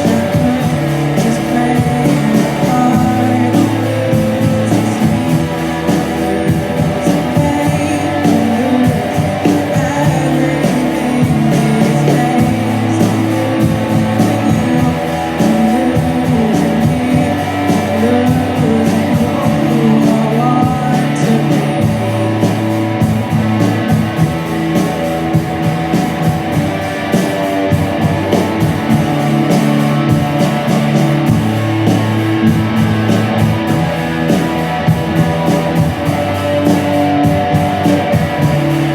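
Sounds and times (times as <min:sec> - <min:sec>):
person singing: 0:00.0 - 0:24.2
bass line: 0:00.0 - 0:38.9
drums: 0:00.0 - 0:38.9
electric guitar: 0:00.0 - 0:38.9.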